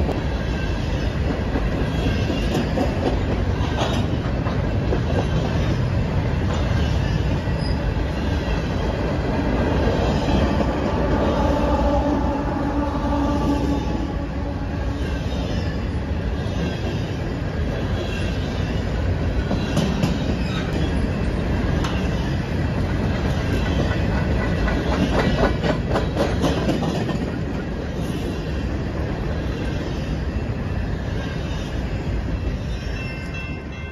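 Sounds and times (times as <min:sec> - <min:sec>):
train wheels rumbling on rail: 0:00.0 - 0:33.9
wheels clicking over rail joints: 0:01.0 - 0:10.8, 0:19.4 - 0:28.3.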